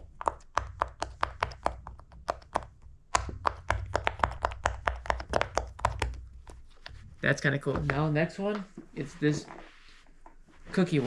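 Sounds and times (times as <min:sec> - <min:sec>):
pop-it toy bubbles popping: 0:00.1 - 0:06.2.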